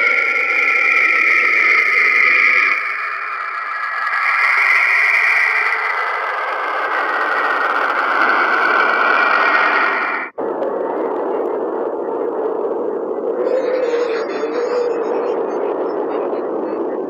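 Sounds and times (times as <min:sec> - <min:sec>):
steady hissing whooshing noise: 0:00.0 - 0:16.5
low rough rushing noise: 0:05.8 - 0:13.4.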